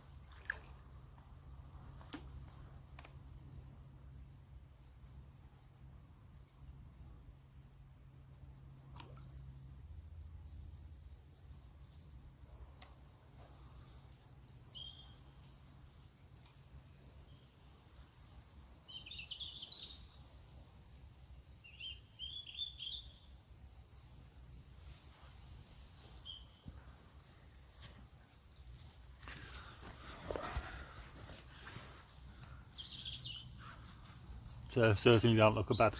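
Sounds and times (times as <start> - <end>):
birds chirping and singing: 12.4 - 15.7, 21.4 - 24.1, 25.0 - 26.7, 29.0 - 35.9.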